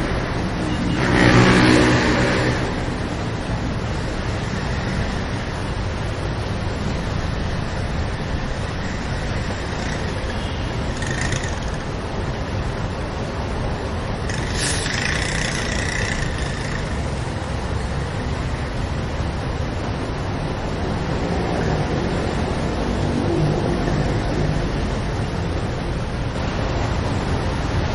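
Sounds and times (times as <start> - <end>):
traffic rumble: 0.0 - 27.9
hiss: 14.3 - 16.0.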